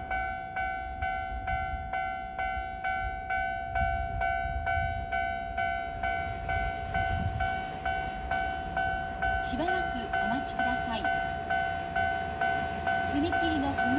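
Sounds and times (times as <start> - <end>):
train rumble: 0.0 - 13.9
level crossing bell clanging: 5.2 - 13.9.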